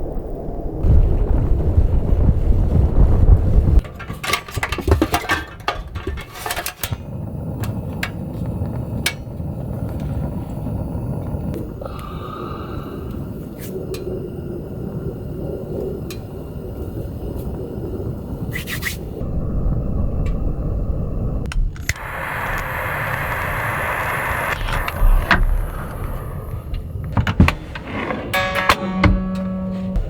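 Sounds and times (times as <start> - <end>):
strong wind buffeting car: 0.0 - 27.9
clicks and knocks of handling: 3.8 - 9.2.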